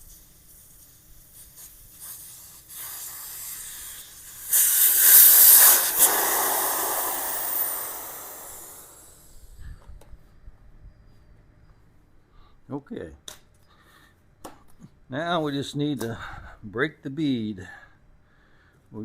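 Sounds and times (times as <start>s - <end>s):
air hissing from tyre valve: 0.0s - 9.6s.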